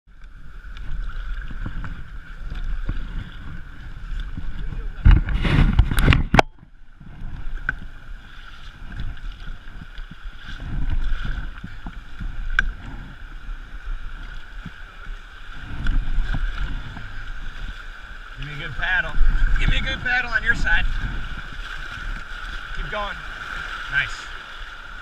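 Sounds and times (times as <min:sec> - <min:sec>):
wind buffeting microphone: 0:00.4 - 0:25.0
river water rushing: 0:06.8 - 0:25.0.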